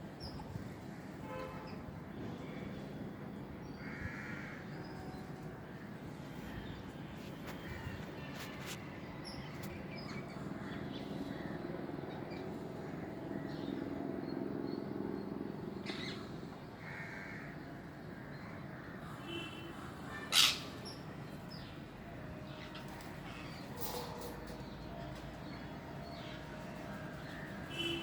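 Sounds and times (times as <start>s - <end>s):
birds calling harshly: 15.8s - 17.6s, 18.4s - 28.0s.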